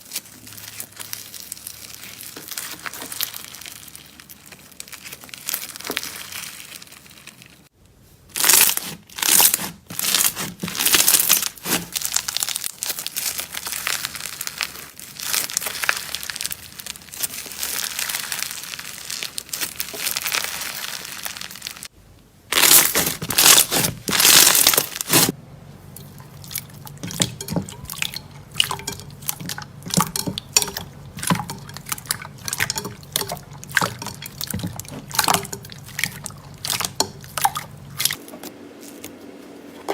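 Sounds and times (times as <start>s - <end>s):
slime squeezed by hand: 22.5s - 25.4s.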